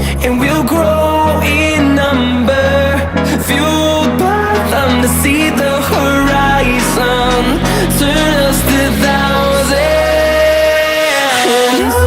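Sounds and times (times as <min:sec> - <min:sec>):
pop song with singer and synths: 0:00.0 - 0:12.0.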